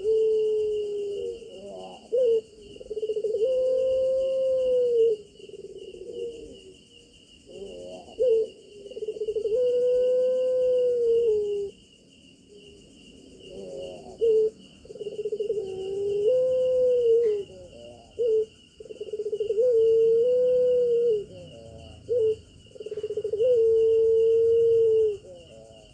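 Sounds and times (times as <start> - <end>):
dove cooing: 0.0 - 11.8, 13.2 - 25.9
high insect chirping: 0.0 - 25.9.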